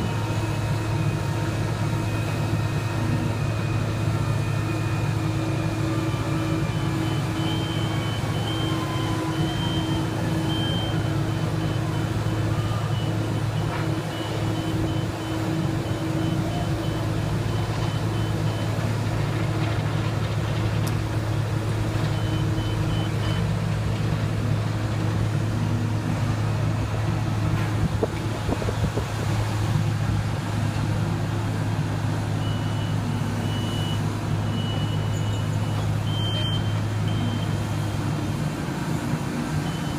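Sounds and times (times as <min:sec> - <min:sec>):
diesel engine humming: 0:00.0 - 0:39.9
backup alarm beeping: 0:06.7 - 0:18.8, 0:22.1 - 0:23.5, 0:32.4 - 0:38.0.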